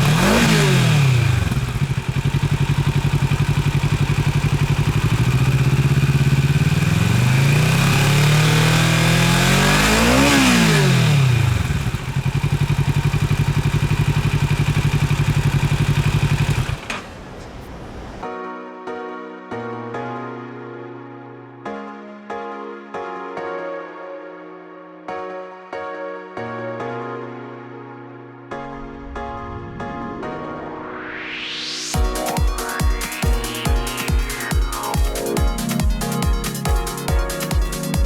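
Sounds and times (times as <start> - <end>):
motorcycle engine idling: 0.0 - 16.9
motorcycle engine revving: 0.0 - 17.0
motorcycle throttle blips: 0.0 - 17.0.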